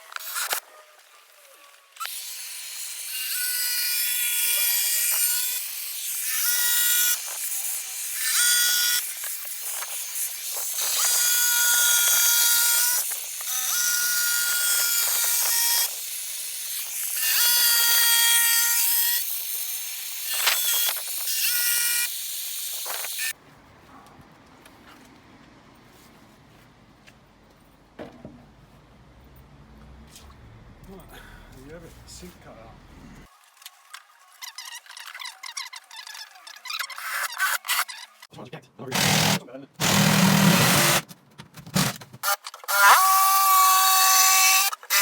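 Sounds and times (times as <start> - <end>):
jigsaw cutting worktop: 38.9 - 41.0.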